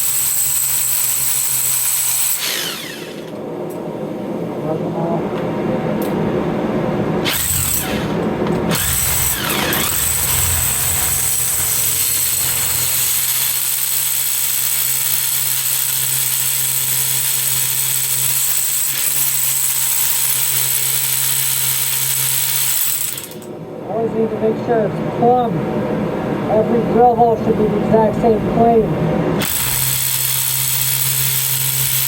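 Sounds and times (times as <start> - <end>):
hammer drill boring into stone: 0.0 - 3.4, 7.3 - 23.5, 29.4 - 32.0.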